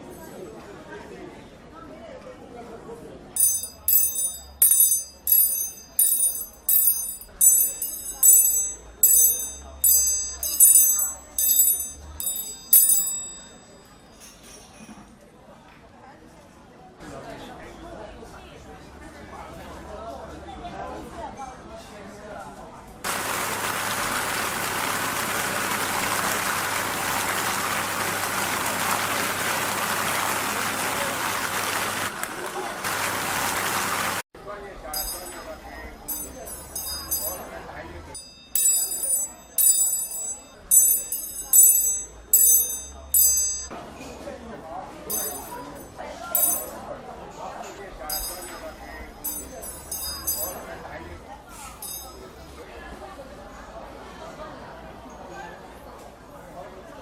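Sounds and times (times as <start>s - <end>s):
high-pitched ringing strokes: 3.4s - 13.7s, 38.2s - 43.7s.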